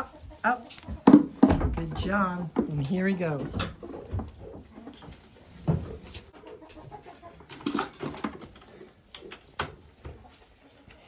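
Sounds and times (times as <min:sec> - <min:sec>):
goat hoof steps and knocks: 0:00.6 - 0:06.5.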